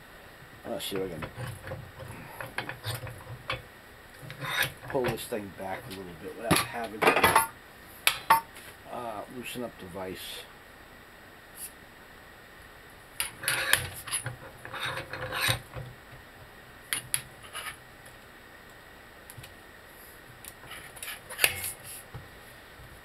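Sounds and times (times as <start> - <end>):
metal clicking and scraping: 13.2 - 15.8, 20.4 - 22.0.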